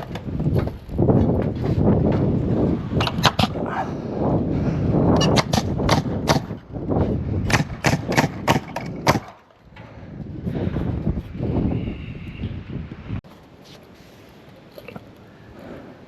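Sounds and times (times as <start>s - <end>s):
hammer striking nails into timber: 5.2s - 6.6s, 7.5s - 9.4s.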